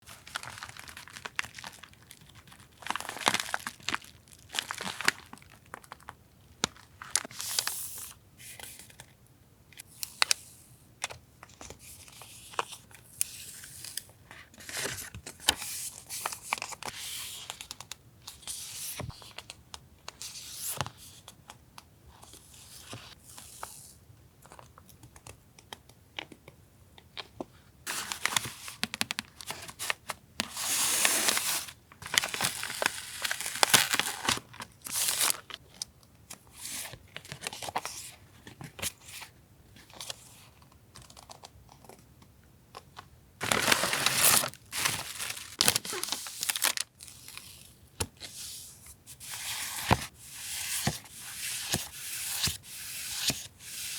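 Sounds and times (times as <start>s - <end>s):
paper rustling and crinkling: 0.0s - 7.8s, 27.9s - 35.7s, 43.4s - 48.4s.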